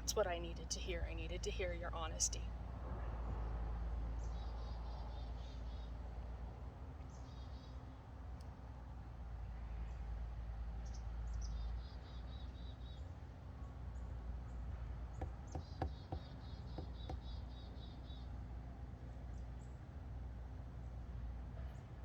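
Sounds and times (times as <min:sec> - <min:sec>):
steady low rumble: 0:00.0 - 0:06.7.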